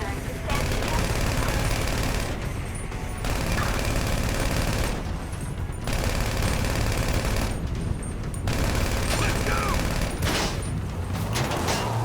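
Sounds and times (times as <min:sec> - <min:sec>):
rapid automatic gunfire: 0:00.5 - 0:07.8, 0:08.5 - 0:10.5.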